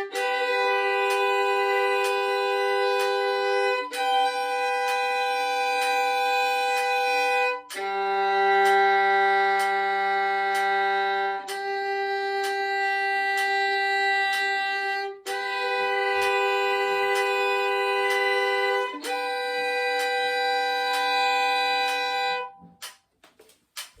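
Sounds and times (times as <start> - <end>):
violin playing double stops: 0.0 - 24.0
faint steady tick: 10.5 - 15.5, 16.2 - 24.0.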